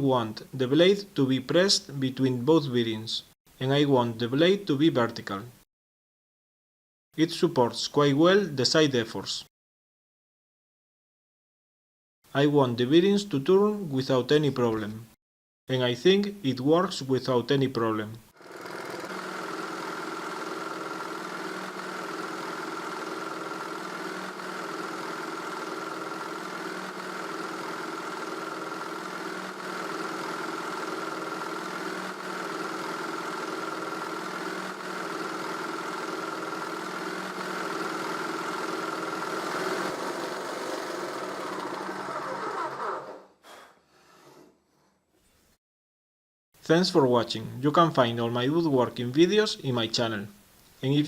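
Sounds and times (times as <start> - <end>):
electric jigsaw running: 18.3 - 43.4.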